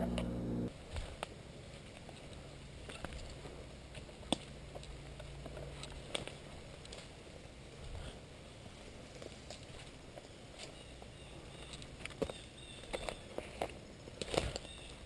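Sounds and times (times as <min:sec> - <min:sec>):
faint low hum: 0:00.0 - 0:00.7
twigs snapping: 0:11.8 - 0:15.0.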